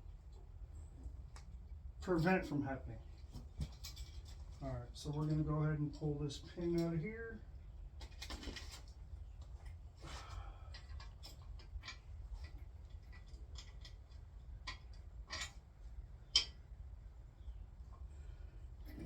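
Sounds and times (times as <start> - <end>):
light metal clicks and knocks: 10.6 - 16.6.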